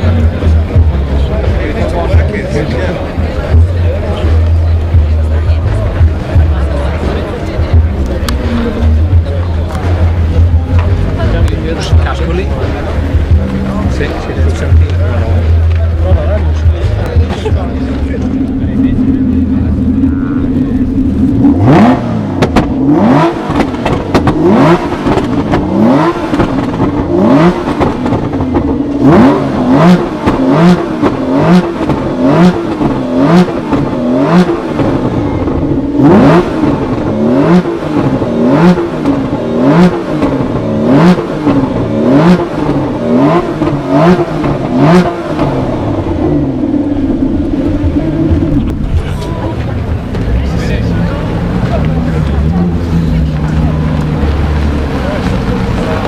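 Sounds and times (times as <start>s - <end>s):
car engine revving: 0.0s - 56.0s
sharp exhaust cracks: 18.2s - 56.0s.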